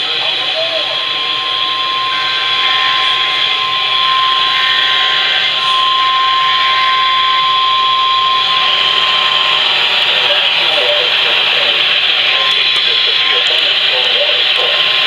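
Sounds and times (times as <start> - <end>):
steady alert tone: 0.0 - 14.6
radio static hiss: 0.0 - 15.0.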